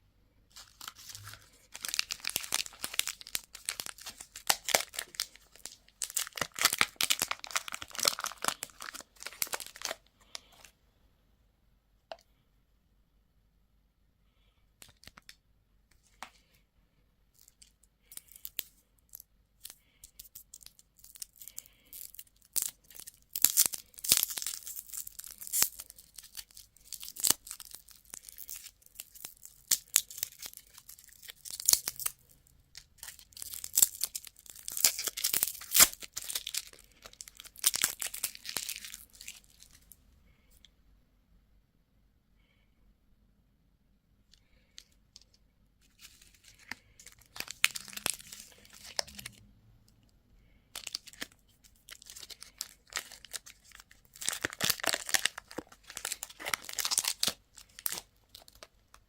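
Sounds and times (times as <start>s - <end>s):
candy wrapper tearing and crinkling: 0.5s - 10.7s, 14.8s - 15.4s, 17.4s - 40.0s, 44.5s - 49.4s, 50.7s - 59.0s.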